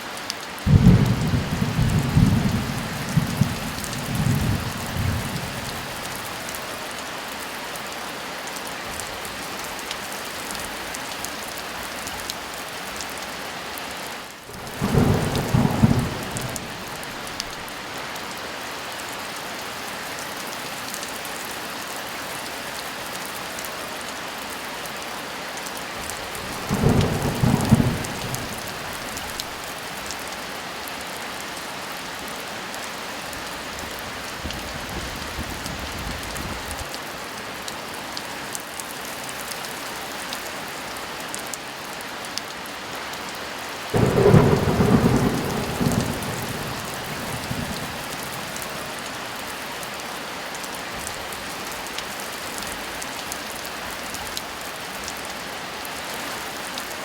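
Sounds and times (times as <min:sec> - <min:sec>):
heavy rain: 0:00.0 - 0:57.0
low rolls of thunder: 0:00.7 - 0:06.2, 0:14.5 - 0:17.6, 0:26.4 - 0:29.6, 0:44.0 - 0:48.9.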